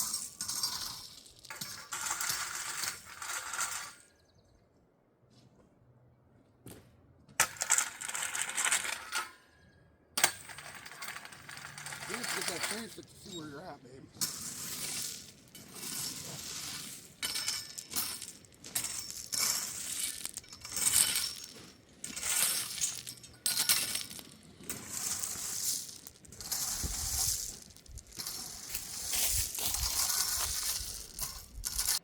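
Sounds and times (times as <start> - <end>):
gravel crunching and scraping: 0.0 - 4.5, 10.2 - 32.0.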